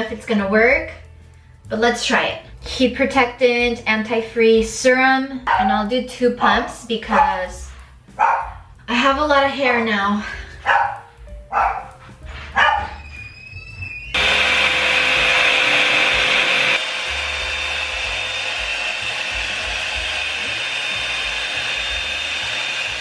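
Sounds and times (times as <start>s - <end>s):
hair dryer blowing: 11.8s - 23.0s
faint motor whine: 14.2s - 23.0s.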